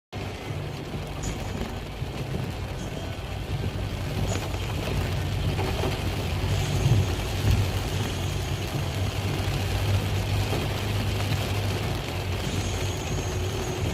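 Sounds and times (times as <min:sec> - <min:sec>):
vehicle engine humming: 0:00.2 - 0:13.9.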